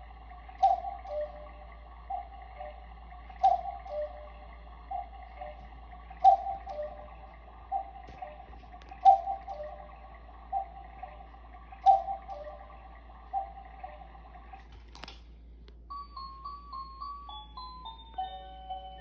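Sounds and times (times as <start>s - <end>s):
cuckoo clock call: 0.0s - 14.6s, 15.9s - 19.0s
music box tinkling tune: 0.6s - 1.5s, 3.4s - 4.3s, 6.3s - 7.1s, 15.9s - 19.0s.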